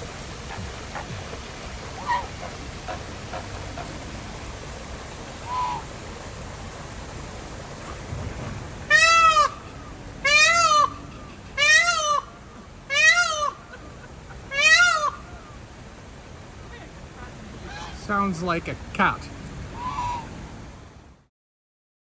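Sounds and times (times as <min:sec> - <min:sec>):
large bird calling: 0:01.9 - 0:04.0, 0:05.4 - 0:05.9, 0:08.8 - 0:15.8, 0:16.5 - 0:18.2, 0:19.7 - 0:20.4.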